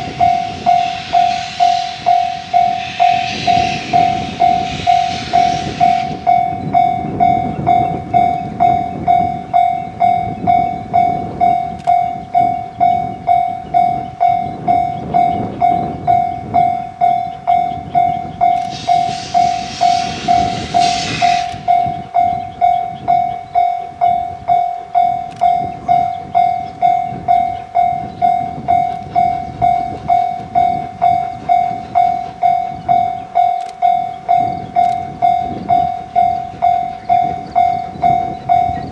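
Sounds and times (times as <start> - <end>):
hiss: 0.0 - 6.7, 18.6 - 22.0
level-crossing warning bell: 0.0 - 38.9
passing train rumble: 0.0 - 38.9.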